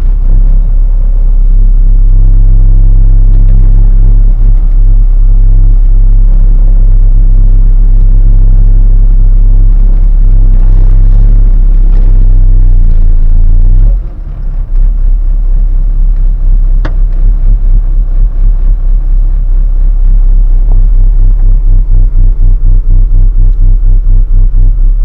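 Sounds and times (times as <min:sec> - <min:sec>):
diesel farm machinery engine: 0:00.0 - 0:25.0.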